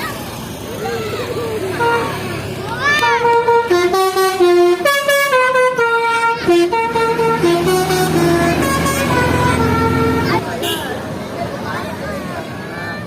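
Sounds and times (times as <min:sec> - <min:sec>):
multi-tone air horn melody: 0:01.7 - 0:02.3, 0:03.0 - 0:10.9.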